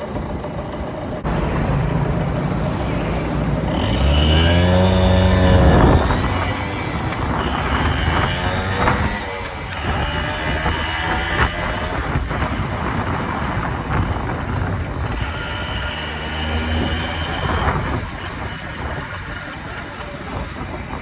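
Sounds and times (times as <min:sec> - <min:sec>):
engine running: 0:00.0 - 0:21.0
low rumble: 0:00.7 - 0:09.2.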